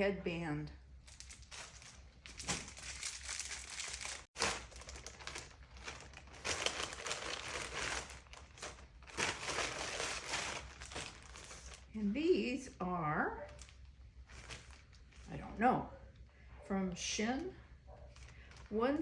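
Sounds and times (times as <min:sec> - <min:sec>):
plastic packaging crinkling: 0:01.0 - 0:12.0, 0:13.5 - 0:15.4.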